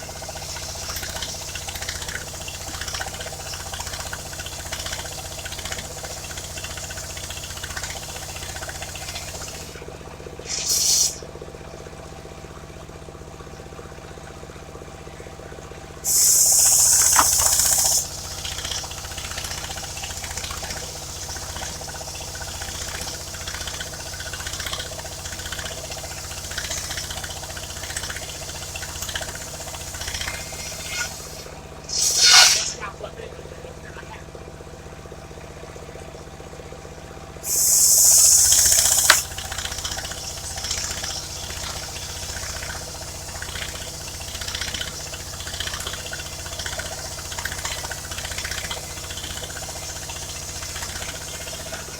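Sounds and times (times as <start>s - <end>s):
loud hisses: 0.0s - 9.8s, 10.4s - 11.2s, 16.0s - 33.3s, 37.4s - 51.9s
sawmill engine idling: 0.0s - 51.9s.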